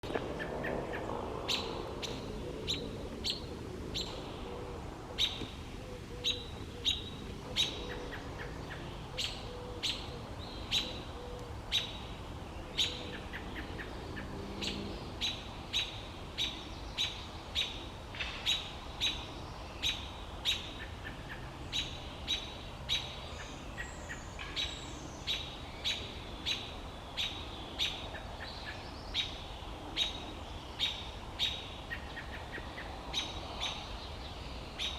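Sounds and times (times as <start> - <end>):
robin chirping: 6.1 - 17.8.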